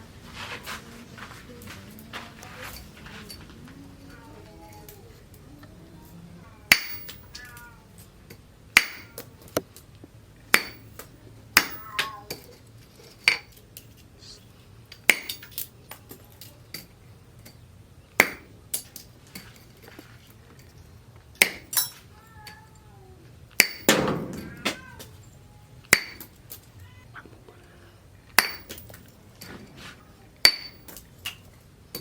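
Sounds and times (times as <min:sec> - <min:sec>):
hammer striking metal: 0:06.7 - 0:07.3, 0:08.8 - 0:09.2, 0:10.5 - 0:12.1, 0:23.6 - 0:24.8, 0:25.9 - 0:26.3, 0:28.4 - 0:29.0, 0:30.4 - 0:31.0.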